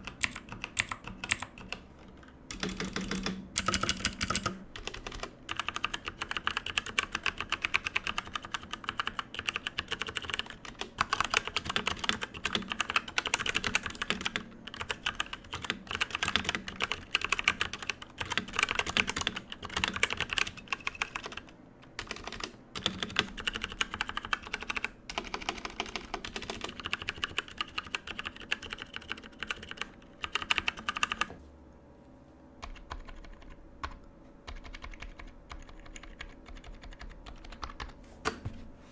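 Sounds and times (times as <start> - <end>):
mechanical keyboard typing: 0.0 - 31.4, 32.6 - 38.0.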